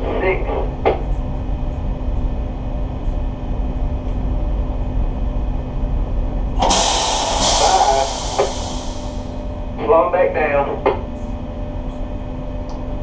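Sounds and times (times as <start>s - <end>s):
boat engine droning: 6.6s - 9.4s
loud hiss: 6.6s - 9.4s.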